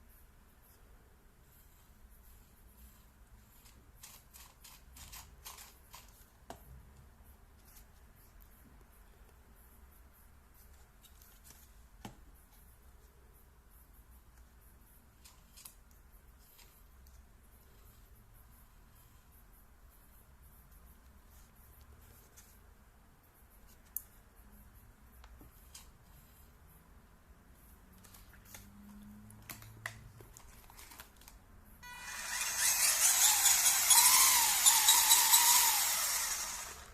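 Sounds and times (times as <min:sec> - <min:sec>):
small electric motor whine: 0:31.8 - 0:36.9.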